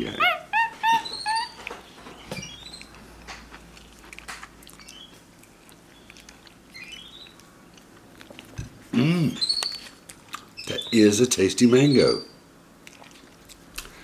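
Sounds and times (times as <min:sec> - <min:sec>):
monkey rising chirps: 0:00.0 - 0:01.7
monkey chewing wet fruit: 0:00.0 - 0:08.8.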